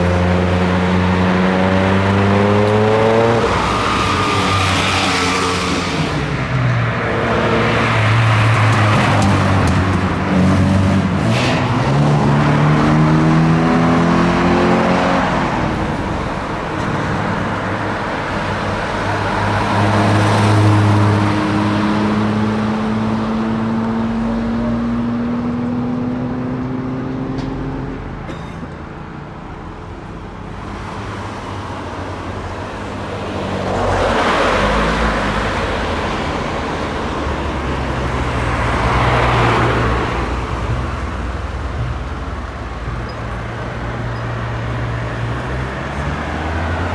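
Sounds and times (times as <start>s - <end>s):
car passing close by: 33.1s - 40.5s.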